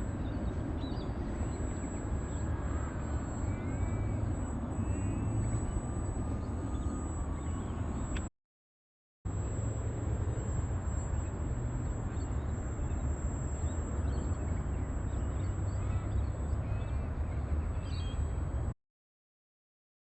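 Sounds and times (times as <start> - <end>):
thin high whine: 0.0 - 8.3, 9.3 - 17.7
faint bird chirps: 12.1 - 18.4.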